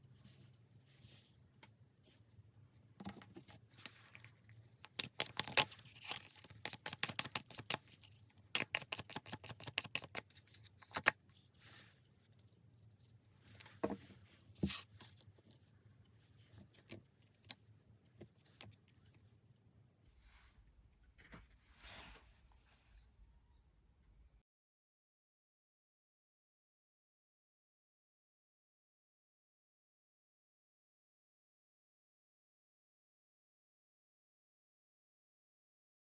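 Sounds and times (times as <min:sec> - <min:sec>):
cards being shuffled: 0:03.1 - 0:11.2.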